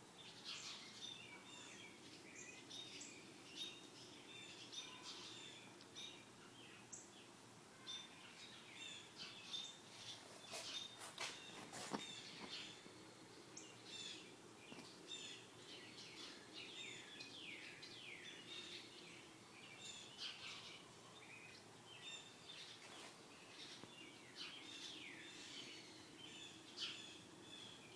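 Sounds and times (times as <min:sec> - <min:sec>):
birds chirping and singing: 0:07.8 - 0:27.9.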